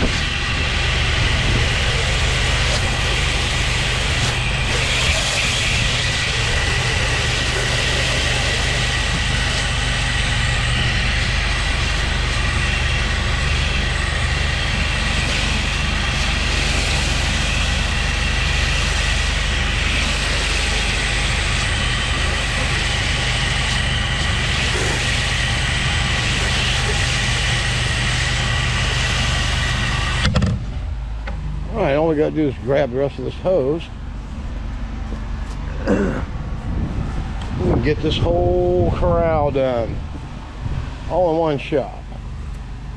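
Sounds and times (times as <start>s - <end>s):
engine hum: 0.0s - 42.9s
water spraying hiss: 0.1s - 30.2s.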